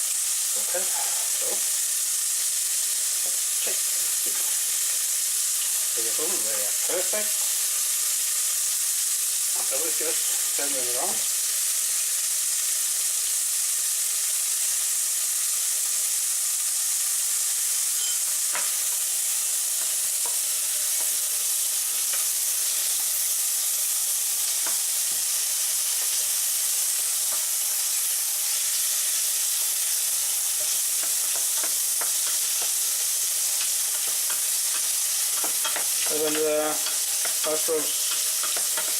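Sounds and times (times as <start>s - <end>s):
food sizzling in oil: 0.0s - 38.9s.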